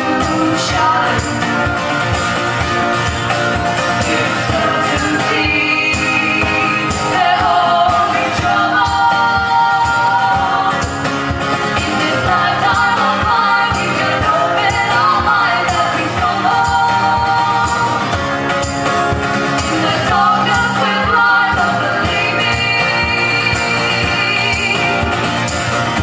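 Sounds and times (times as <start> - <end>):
voices singing in harmony: 0.0 - 2.2, 3.7 - 18.5, 19.4 - 25.4
guitar: 0.0 - 26.0
steady drum beat: 0.0 - 26.0.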